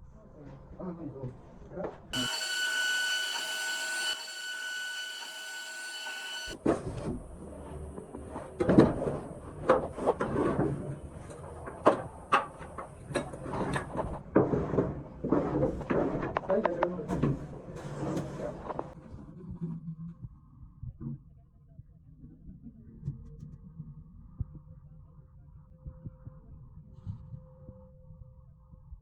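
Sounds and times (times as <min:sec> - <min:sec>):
cnc router whine: 0:02.2 - 0:06.6.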